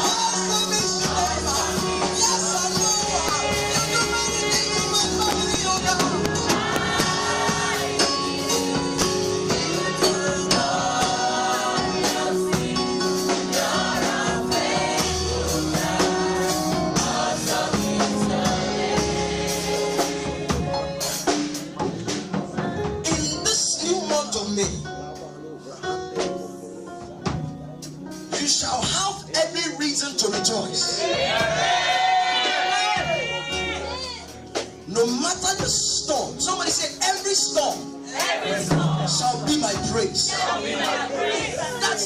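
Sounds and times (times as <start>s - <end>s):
voices singing gospel music: 0.0s - 25.0s, 27.9s - 42.0s
band playing: 0.0s - 42.0s.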